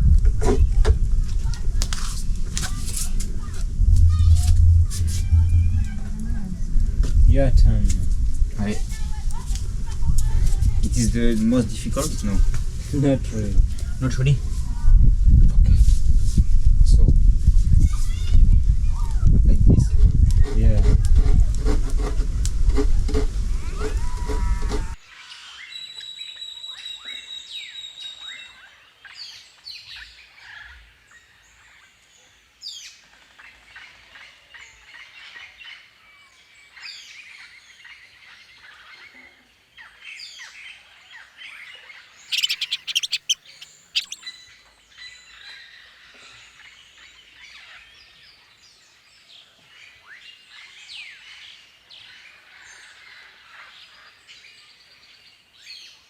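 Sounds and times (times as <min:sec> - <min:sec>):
birds chirping: 0:42.3 - 0:44.4.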